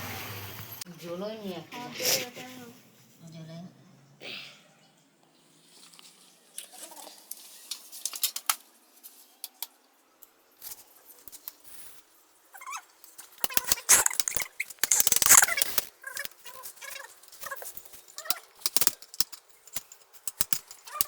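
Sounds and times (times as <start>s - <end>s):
metal tools clicking and scraping: 12.6s - 21.0s.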